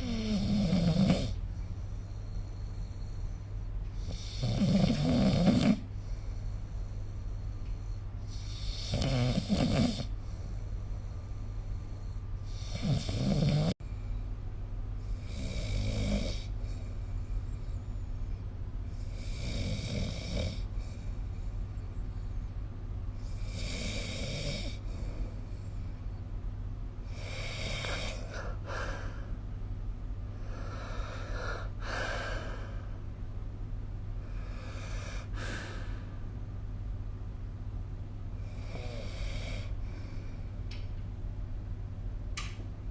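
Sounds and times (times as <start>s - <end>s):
person snoring: 0.0s - 1.4s, 4.0s - 5.9s, 8.3s - 10.1s, 12.5s - 13.8s, 19.0s - 20.7s, 23.2s - 24.8s, 27.1s - 29.2s
steady low hum: 0.0s - 42.9s.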